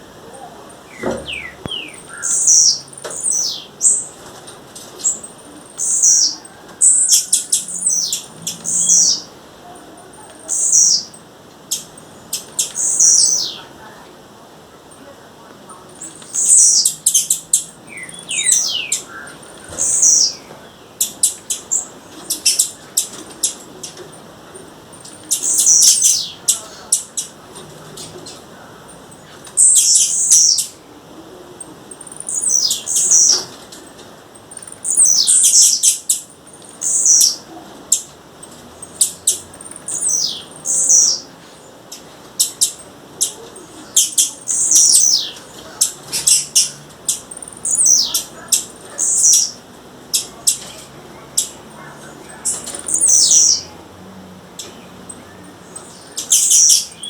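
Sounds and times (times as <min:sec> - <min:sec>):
bird calling high sliding notes: 0:00.1 - 0:04.2, 0:16.0 - 0:22.8.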